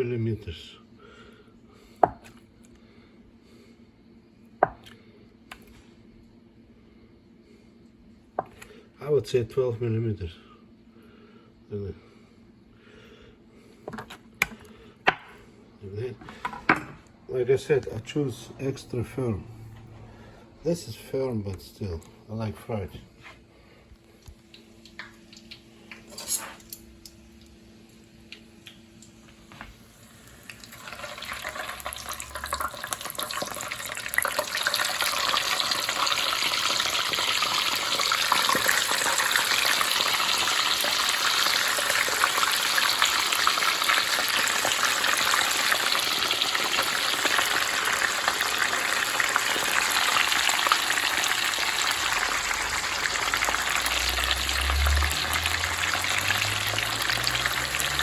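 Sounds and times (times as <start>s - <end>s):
tofu sizzling in hot oil: 29.8s - 58.0s.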